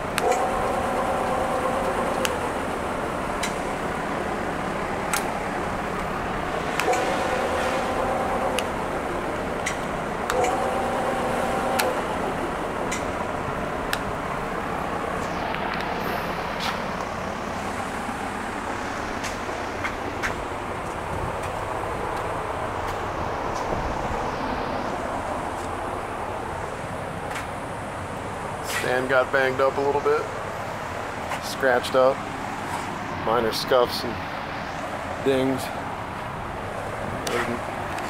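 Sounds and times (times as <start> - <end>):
short steady tones: 0.0 - 16.8
bench lathe running: 0.0 - 27.2.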